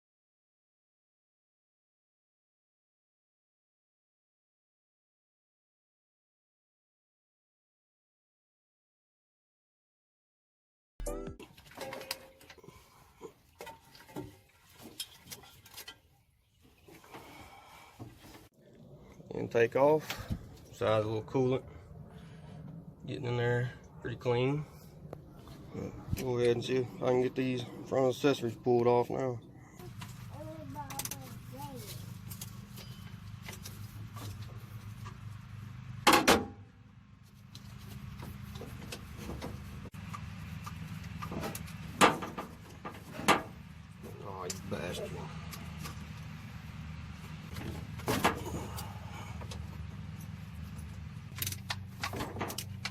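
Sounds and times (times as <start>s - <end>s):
metal tools and parts clinking: 11.5s - 12.6s
steady low hum: 18.6s - 36.0s, 36.6s - 52.9s.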